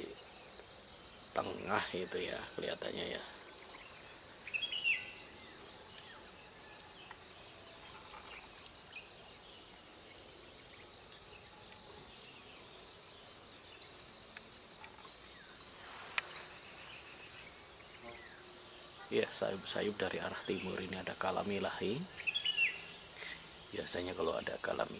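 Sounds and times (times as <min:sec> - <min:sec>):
high-pitched insect chorus: 0:00.0 - 0:24.9
brief insect chirps: 0:03.5 - 0:18.4.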